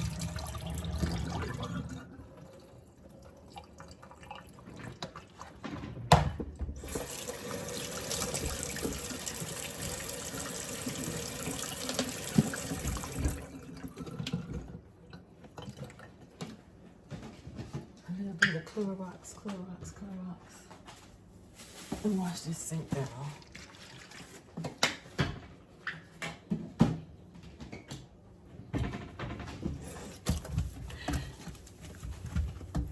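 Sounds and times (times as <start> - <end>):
tap water splashing into sink: 3.5 - 14.8.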